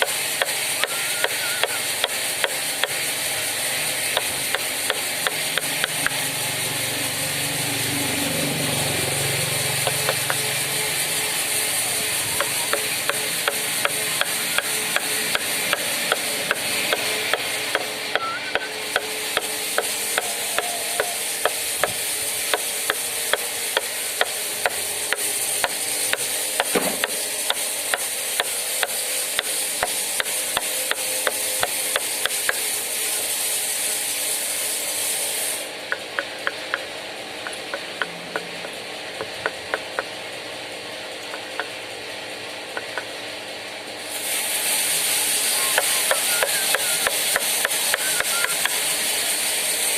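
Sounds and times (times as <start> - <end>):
wood carving taps: 4.1 - 6.2, 35.9 - 40.1, 42.8 - 43.1.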